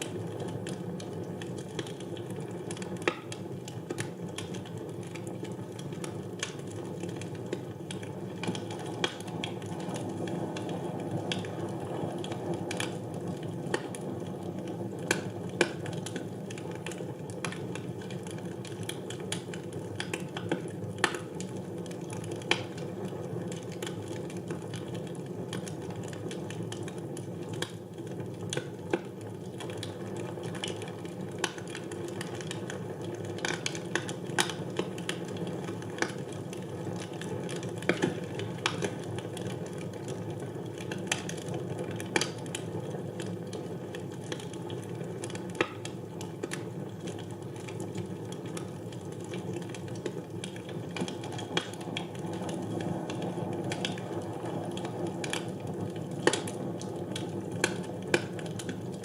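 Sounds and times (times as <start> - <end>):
logs crackling and popping: 0.0 - 59.0.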